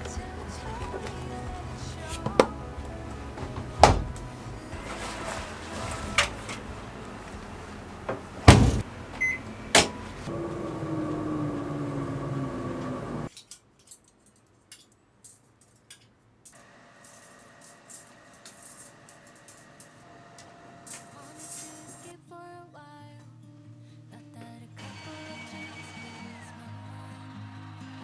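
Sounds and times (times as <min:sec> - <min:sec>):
steady falling hum: 0:00.0 - 0:13.3
household knocks and bangs: 0:00.1 - 0:08.9.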